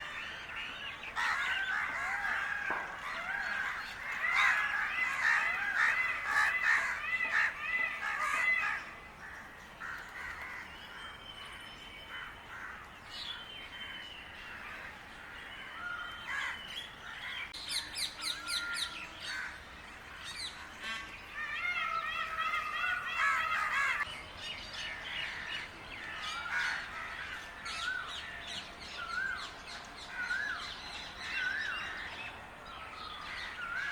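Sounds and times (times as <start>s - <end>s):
crows cawing: 1.2s - 10.7s, 21.6s - 24.1s.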